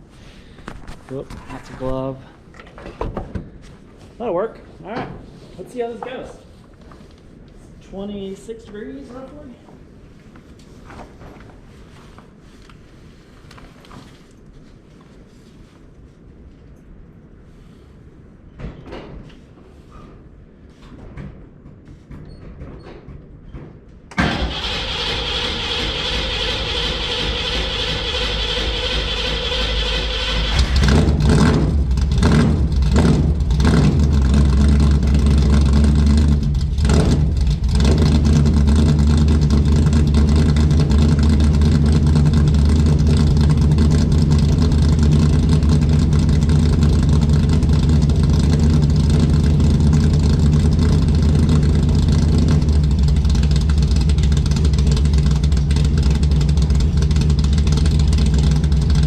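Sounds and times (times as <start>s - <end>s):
car engine revving and idling: 24.6s - 59.0s.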